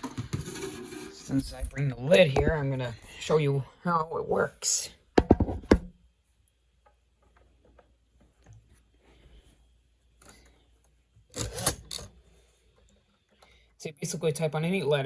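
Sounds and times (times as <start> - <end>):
typewriter knocks: 5.2 - 5.9.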